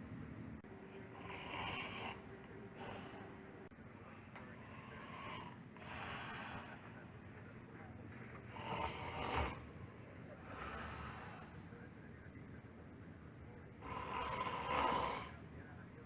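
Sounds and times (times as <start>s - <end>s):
man snoring: 1.0s - 2.2s, 2.8s - 3.3s, 4.6s - 6.9s, 8.5s - 9.6s, 10.4s - 11.6s, 13.8s - 15.4s.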